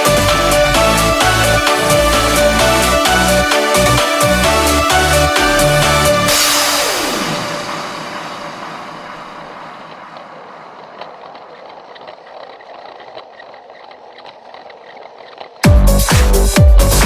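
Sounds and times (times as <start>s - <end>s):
toy train running on track: 0.0s - 7.4s, 8.8s - 15.7s
electronic dance music: 0.0s - 10.8s, 15.6s - 17.0s
hissing wash: 0.0s - 15.5s
faint irregular clicks: 9.9s - 15.6s.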